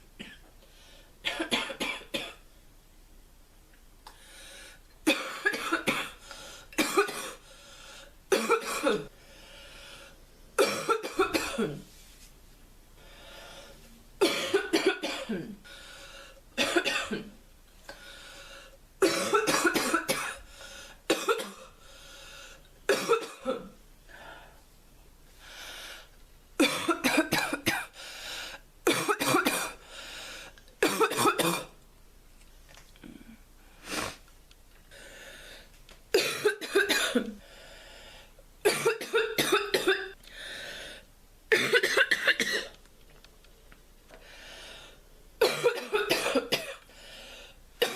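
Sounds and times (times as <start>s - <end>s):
girl coughing: 1.3s - 2.4s, 5.1s - 6.2s, 6.8s - 7.4s, 8.3s - 9.1s, 10.6s - 11.8s, 14.2s - 15.5s, 16.6s - 17.3s, 19.0s - 20.4s, 21.1s - 21.7s, 22.9s - 23.7s, 26.6s - 28.0s, 28.9s - 29.8s, 30.8s - 31.7s, 36.2s - 37.4s, 38.7s - 40.2s, 41.5s - 42.7s, 45.4s - 46.8s.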